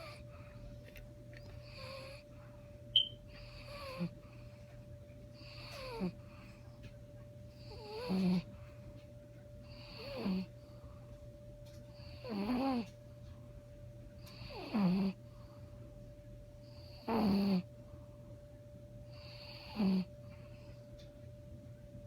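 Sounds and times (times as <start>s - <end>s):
dog snoring: 0.0s - 0.6s, 1.5s - 2.4s, 3.3s - 4.6s, 5.3s - 6.7s, 7.5s - 8.8s, 9.6s - 11.0s, 11.9s - 13.0s, 14.2s - 15.7s, 16.6s - 17.7s, 19.0s - 20.8s.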